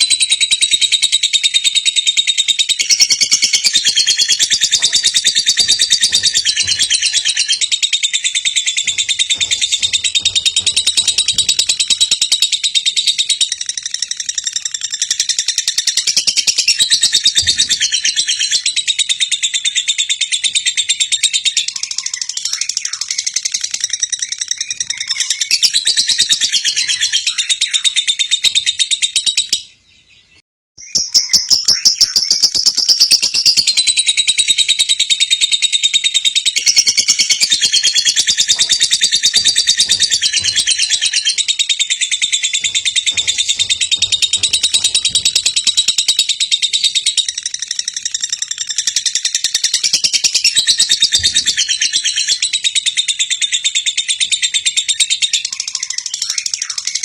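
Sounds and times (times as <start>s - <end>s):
lovebird fast high chirps: 0.0s - 19.8s, 30.8s - 53.0s.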